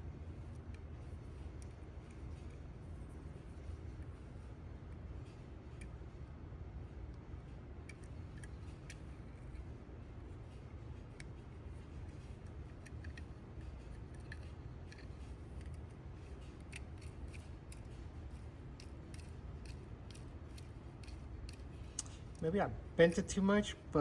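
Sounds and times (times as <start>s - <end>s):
low steady hum: 0.0s - 24.0s
hand tools clicking on toy car: 16.5s - 22.1s.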